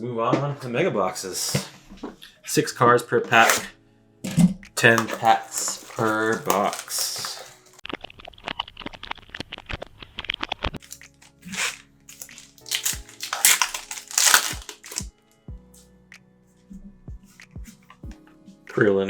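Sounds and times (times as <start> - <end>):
soft background music: 0.0 - 7.8, 10.8 - 19.0
plastic wrapping crinkling: 1.2 - 1.7, 3.3 - 7.8, 10.8 - 15.1.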